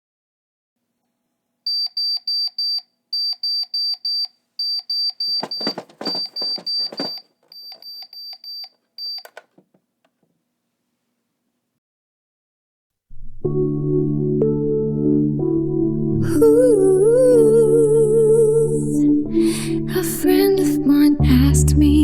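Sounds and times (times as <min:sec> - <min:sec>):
electronic alarm beeping: 0:01.7 - 0:09.4
rustling noise: 0:05.2 - 0:07.8
click: 0:09.0 - 0:10.3.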